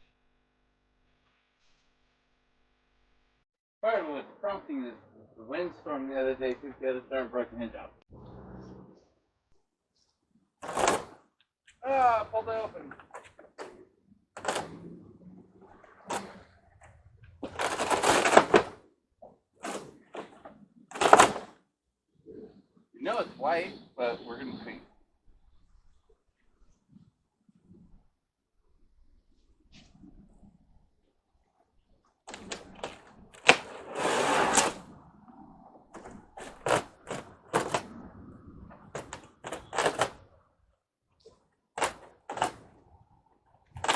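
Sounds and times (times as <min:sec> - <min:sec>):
screen door rattling scrape: 0:10.6 - 0:11.2, 0:12.4 - 0:18.8, 0:19.6 - 0:21.6, 0:32.3 - 0:35.0, 0:35.9 - 0:40.4, 0:41.8 - 0:42.8
hard parts clicking and knocking: 0:19.6 - 0:21.5, 0:36.0 - 0:37.9, 0:38.8 - 0:40.2, 0:41.8 - 0:42.7
screen door click: 0:41.8 - 0:42.7.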